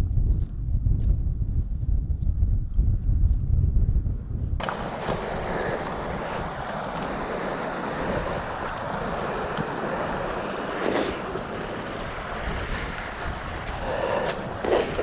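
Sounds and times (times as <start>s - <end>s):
faint footsteps: 0.0s - 15.0s
wind buffeting microphone: 0.0s - 15.0s
steady rushing hiss: 4.6s - 15.0s.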